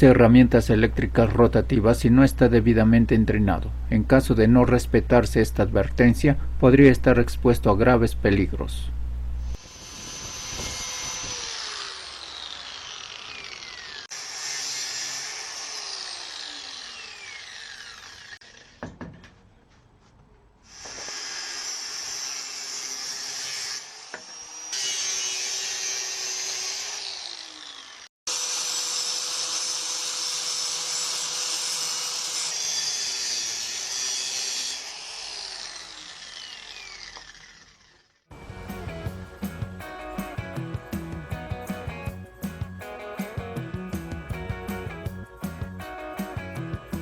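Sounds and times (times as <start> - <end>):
grinder motor winding down: 9.5 - 18.8, 24.0 - 38.6
angle grinder whining: 9.5 - 19.0, 20.7 - 39.2.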